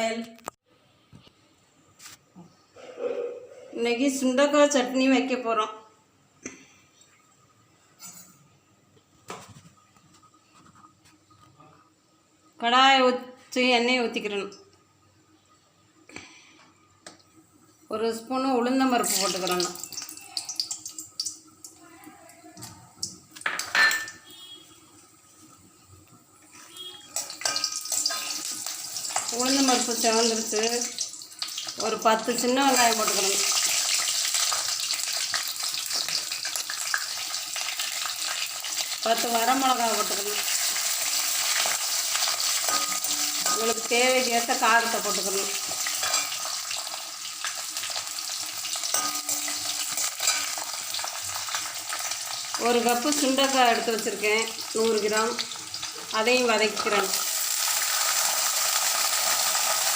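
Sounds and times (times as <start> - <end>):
onions sizzling in hot oil: 18.2 - 21.8, 23.0 - 59.9
metal utensil clattering on pot: 27.2 - 28.5, 42.6 - 43.8, 48.9 - 50.6
spatula scraping a pan: 41.5 - 43.8
metal ringing: 48.9 - 49.7.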